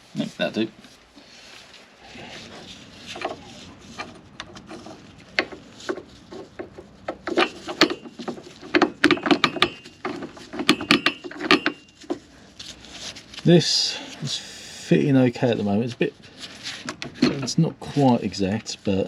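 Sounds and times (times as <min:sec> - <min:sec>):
metal parts knocking and clinking: 0:07.1 - 0:11.9
metal parts scraping: 0:07.2 - 0:13.2.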